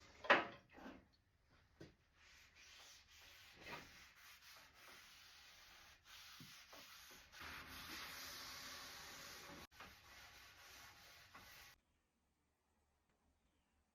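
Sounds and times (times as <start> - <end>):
faint sanding on wood: 2.2 - 11.8.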